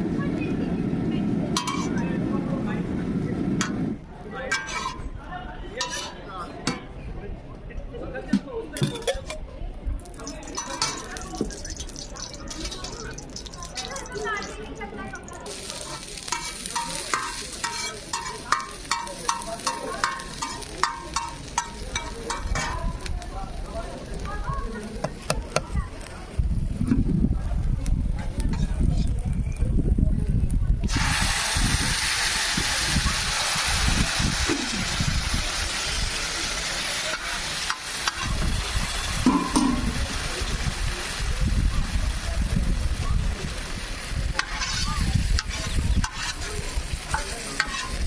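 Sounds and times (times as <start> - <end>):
metal spatula clanking on griddle: 1.6 - 2.2, 4.5 - 5.1, 5.8 - 6.9, 8.8 - 9.4, 10.2 - 14.6, 15.6 - 23.1, 37.1 - 38.4, 39.2 - 40.0, 44.4 - 48.0
frying sizzle: 10.0 - 26.4, 30.9 - 48.0
utensils clicking and clattering: 10.2 - 14.8.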